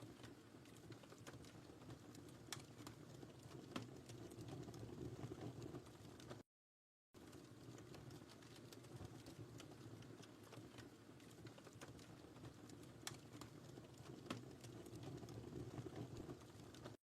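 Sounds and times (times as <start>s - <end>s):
fire crackling in fireplace: 0.0s - 6.4s, 7.2s - 17.0s
low rustle of flame: 0.0s - 6.4s, 7.2s - 17.0s
sharp pops and ticks: 0.0s - 6.4s, 7.2s - 17.0s.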